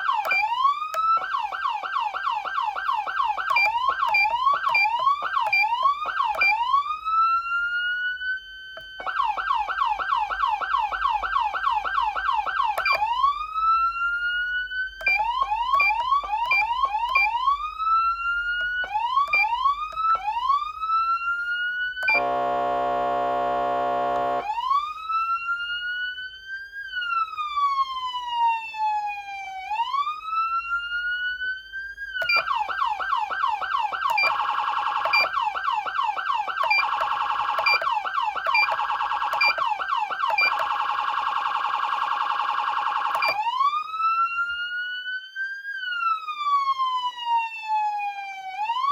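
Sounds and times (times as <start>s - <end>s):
electronic siren yelp and wail: 0.0s - 48.9s
buzzy horn tone: 22.2s - 24.5s.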